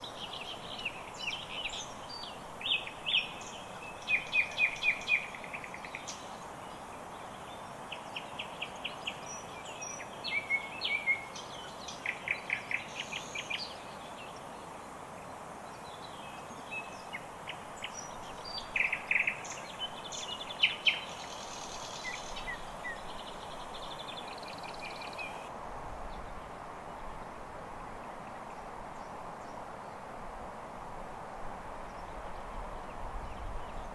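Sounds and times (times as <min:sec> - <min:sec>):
chaffinch singing: 0:00.0 - 0:14.5, 0:15.7 - 0:25.5.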